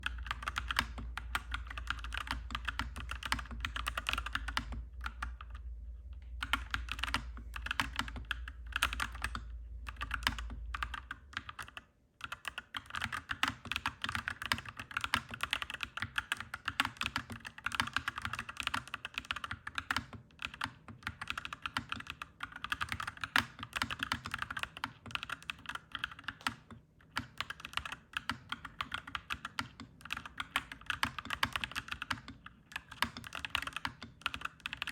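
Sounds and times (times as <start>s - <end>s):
mechanical keyboard typing: 0.0s - 5.6s, 6.4s - 34.9s
steady low hum: 0.0s - 11.6s.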